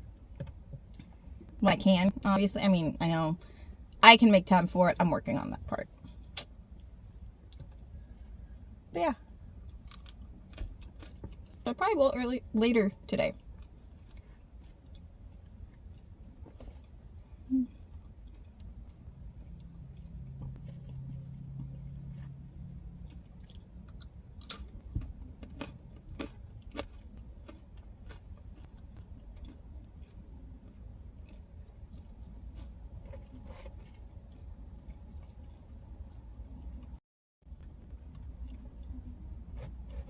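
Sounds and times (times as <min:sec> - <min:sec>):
chewing and biting pizza: 0:09.6 - 0:11.6, 0:13.3 - 0:36.9, 0:37.5 - 0:40.0.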